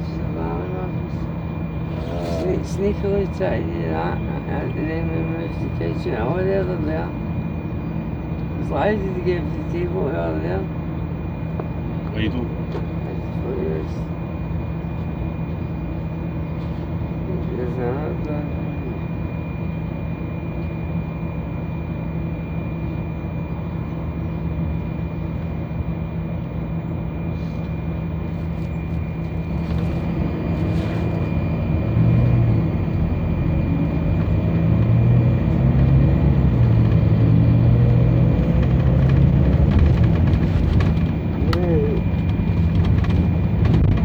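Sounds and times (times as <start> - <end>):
thin high whine: 0.0 - 11.5
bus engine and road rumble: 0.0 - 44.0.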